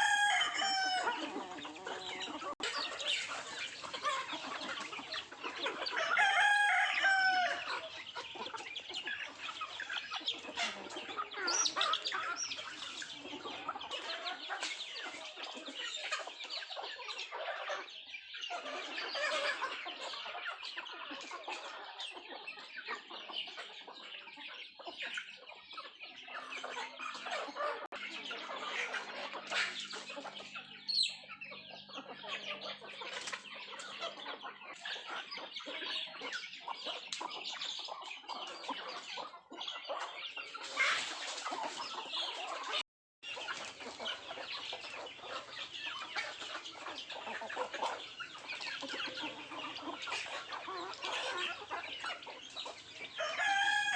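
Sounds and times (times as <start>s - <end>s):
rooster crowing: 0.0s - 1.2s, 6.0s - 7.6s, 53.2s - 53.9s
chickens clucking: 0.0s - 53.9s.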